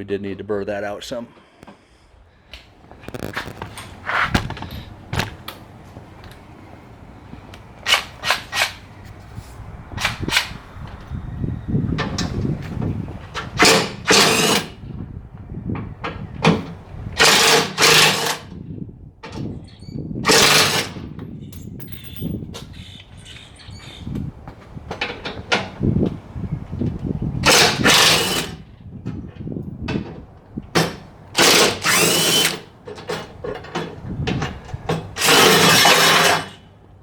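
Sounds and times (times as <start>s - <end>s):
impact wrench bursts: 3.0s - 5.3s, 13.4s - 14.8s, 17.2s - 18.5s, 20.2s - 21.0s, 27.4s - 28.6s, 30.8s - 32.8s, 35.0s - 36.7s.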